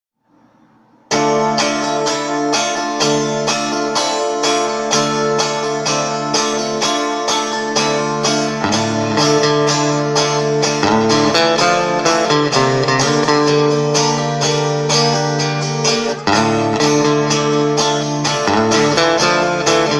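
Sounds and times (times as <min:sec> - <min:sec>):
guitar strummed: 0:00.3 - 0:19.9.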